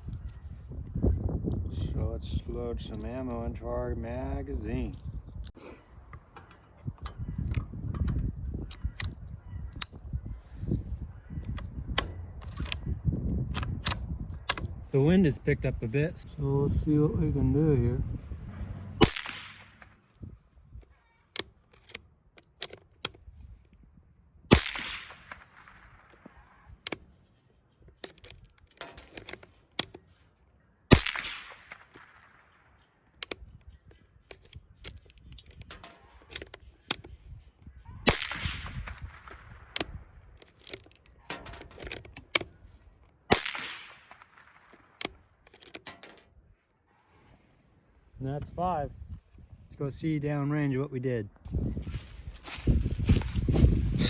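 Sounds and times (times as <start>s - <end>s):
rifle shots with echo: 18.9s - 20.1s, 24.5s - 26.3s, 30.9s - 32.9s, 38.0s - 39.8s, 43.3s - 45.0s.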